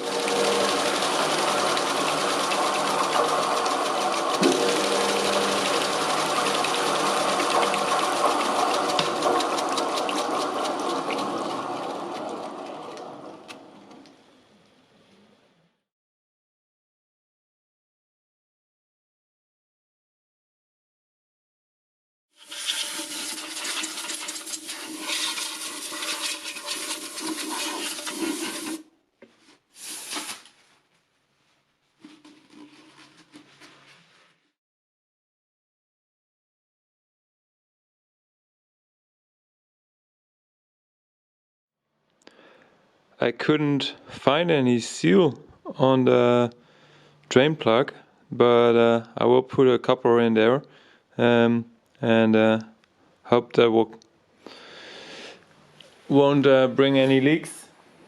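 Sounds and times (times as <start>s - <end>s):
fluid rushing and splashing: 0.0s - 13.5s, 22.4s - 28.8s.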